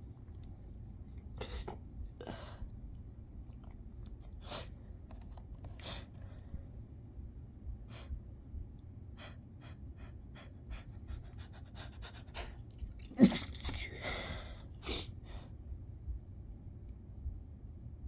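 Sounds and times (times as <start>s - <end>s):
stifled sneeze: 13.0s - 13.9s.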